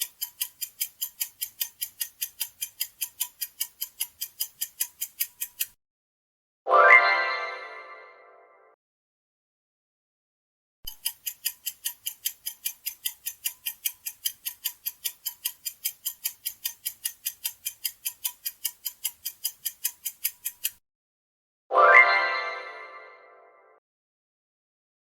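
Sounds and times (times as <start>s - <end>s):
clock ticking timer: 0.0s - 5.8s, 10.9s - 20.8s.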